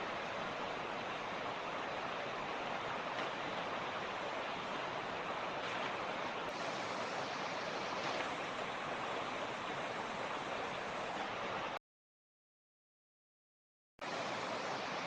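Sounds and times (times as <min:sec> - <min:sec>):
creek water rushing over rocks: 0:00.0 - 0:11.8, 0:14.0 - 0:15.0.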